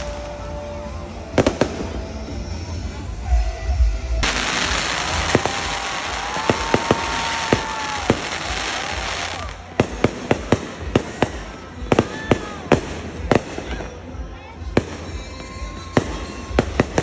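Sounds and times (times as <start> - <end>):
fireworks crackling: 0.0 - 17.0
firework bangs: 1.3 - 2.5, 4.2 - 14.0, 14.7 - 17.0.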